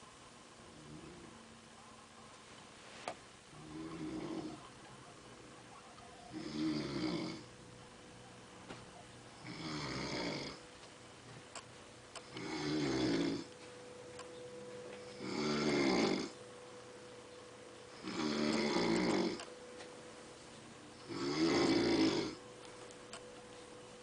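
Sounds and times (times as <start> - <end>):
woman snoring loudly: 6.3 - 7.5, 9.4 - 10.6, 12.3 - 13.5, 15.1 - 16.4, 18.0 - 19.4, 21.0 - 22.4.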